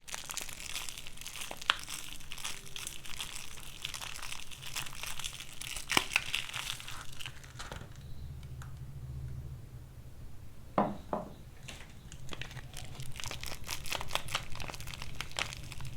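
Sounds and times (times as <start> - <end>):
soap wrapper crinkling: 0.0 - 8.1, 11.6 - 15.9
wrapper snapping: 0.1 - 8.0, 11.7 - 15.9.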